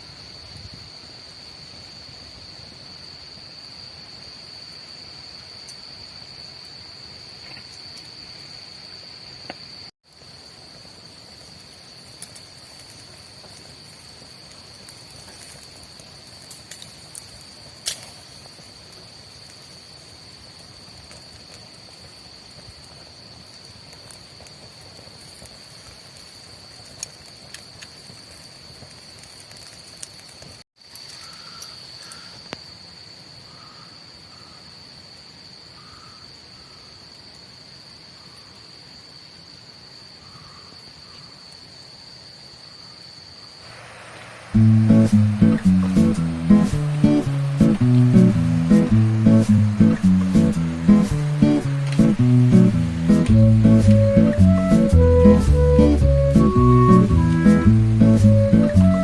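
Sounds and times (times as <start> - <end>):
crickets trilling: 0.0 - 59.0
sharp pops and clicks: 44.6 - 55.0.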